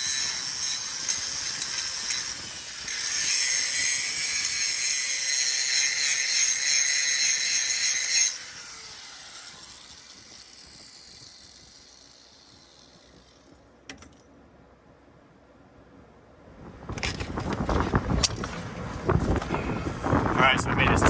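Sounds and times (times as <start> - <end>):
angle grinder whining: 0.0 - 13.7.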